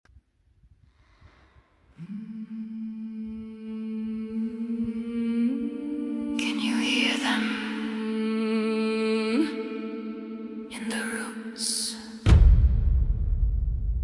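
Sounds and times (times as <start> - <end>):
choir-like humming drone: 2.0 - 12.2.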